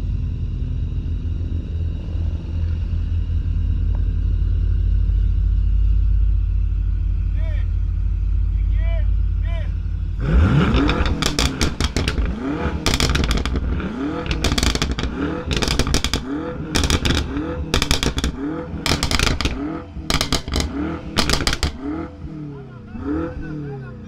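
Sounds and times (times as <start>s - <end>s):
car exhaust revving with pops: 1.2s - 6.5s, 9.8s - 23.6s.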